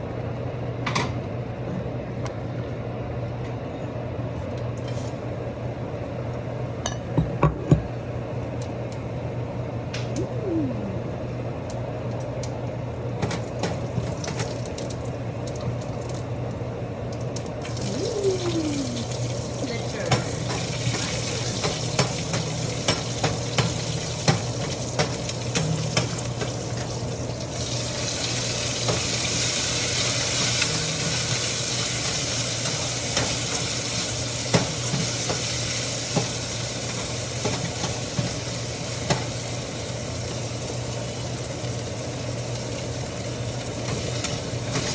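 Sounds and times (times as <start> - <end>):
steady low hum: 0.0 - 13.2
food sizzling in hot oil: 17.5 - 44.9.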